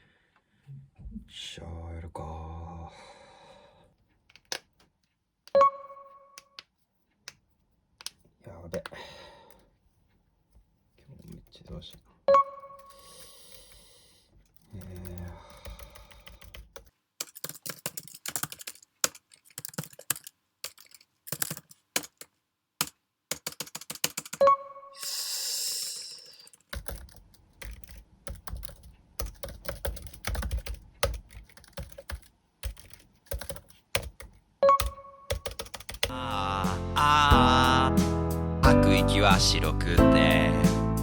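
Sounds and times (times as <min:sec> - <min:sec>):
keyboard typing clicks: 0:04.3 - 0:04.8, 0:14.5 - 0:24.6, 0:26.3 - 0:36.1.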